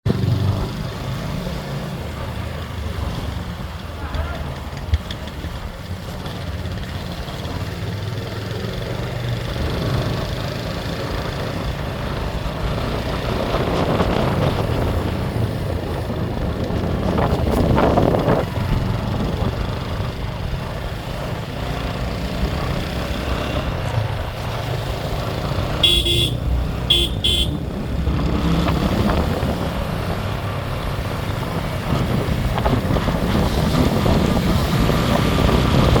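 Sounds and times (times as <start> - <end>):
road noise on wet street: 0.1 - 36.0
motorcycle engine running: 4.5 - 36.0
horn beeps: 25.8 - 27.6.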